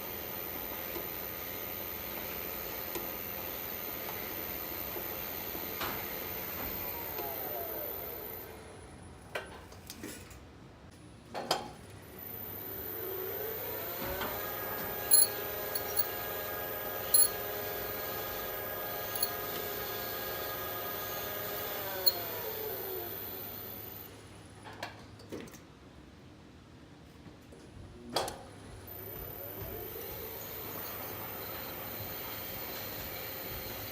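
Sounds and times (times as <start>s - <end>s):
elevator drive whine: 12.8s - 24.1s
noisy elevator brake: 14.0s - 16.2s, 17.1s - 17.4s, 19.0s - 19.7s
sharp clicks: 15.1s - 16.1s.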